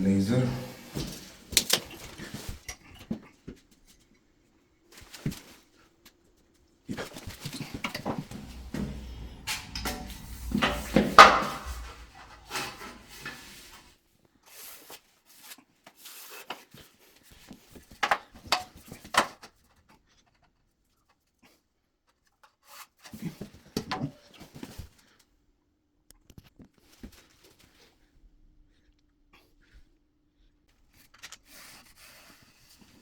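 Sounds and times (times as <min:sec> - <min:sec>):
tools knocking and scraping: 0:07.6 - 0:13.9.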